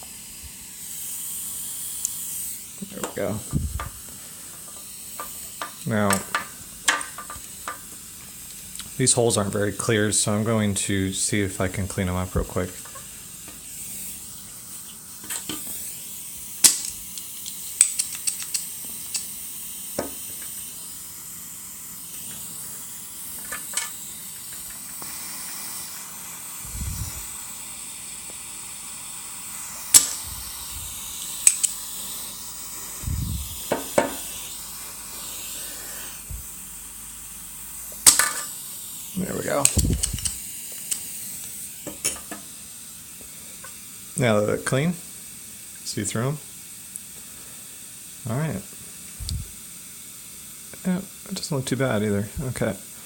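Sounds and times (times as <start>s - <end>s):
desoldering hiss and sizzle: 0.0s - 53.0s
sharp tool clicks: 16.6s - 19.3s, 29.9s - 30.2s, 31.4s - 31.8s, 38.0s - 38.5s, 39.6s - 41.1s.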